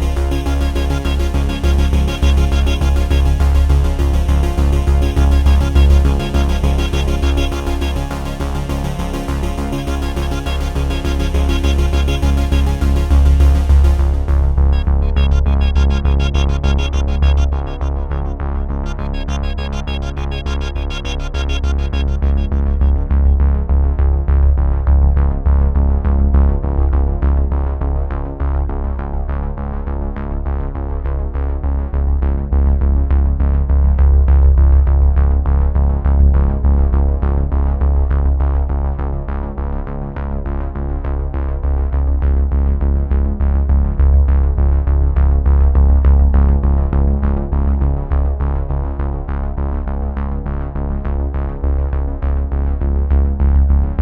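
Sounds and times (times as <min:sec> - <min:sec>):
synthesizer music with beat: 0:00.0 - 0:23.5
heavy bass line: 0:00.0 - 0:27.2.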